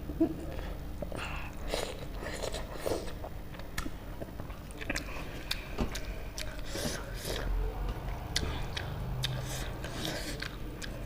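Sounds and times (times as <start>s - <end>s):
person chewing food: 1.0s - 11.0s
sharp mouth clicks: 8.4s - 11.0s.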